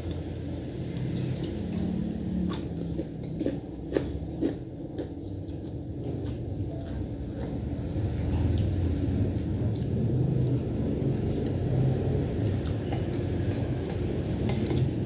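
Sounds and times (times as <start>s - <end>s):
person chewing food: 0.0s - 15.0s
food crunching: 0.9s - 11.7s.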